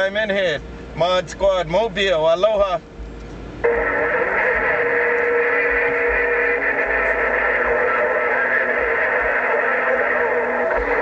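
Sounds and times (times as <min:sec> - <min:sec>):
garbled radio transmission: 0:03.6 - 0:11.0
held radio tones: 0:03.6 - 0:11.0.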